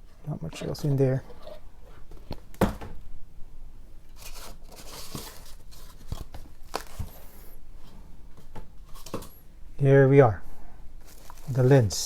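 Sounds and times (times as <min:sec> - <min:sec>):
packaging rustling and crinkling: 0:04.1 - 0:07.6, 0:11.0 - 0:12.0.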